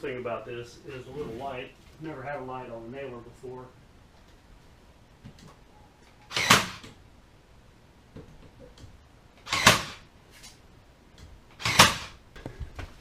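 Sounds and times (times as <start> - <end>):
nail gun firing into wood: 6.3 - 7.0, 9.4 - 10.1, 11.6 - 12.2.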